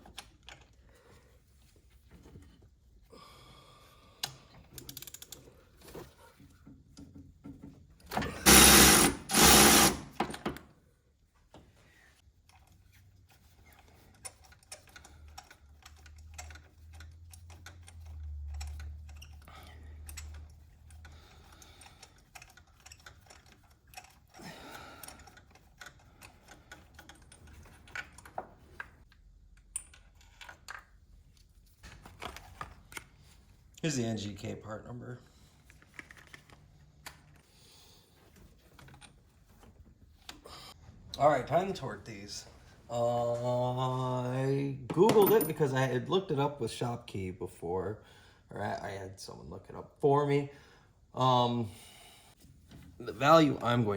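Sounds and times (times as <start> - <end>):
ratchet and socket clicks: 4.7 - 5.5.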